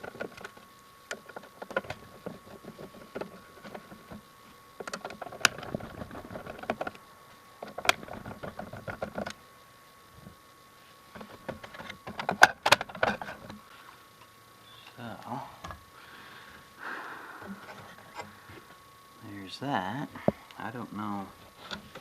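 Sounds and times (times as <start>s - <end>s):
faint steady high tone: 14.6s - 15.8s.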